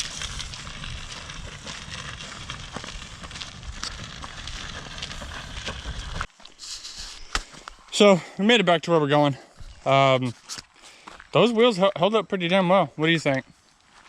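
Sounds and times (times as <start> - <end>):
cart wheels rolling over rocky ground: 0.0 - 6.5.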